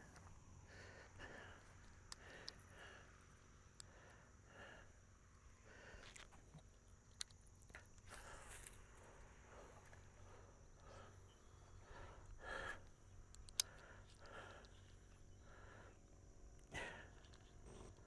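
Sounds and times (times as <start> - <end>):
sharp click: 13.3 - 13.8.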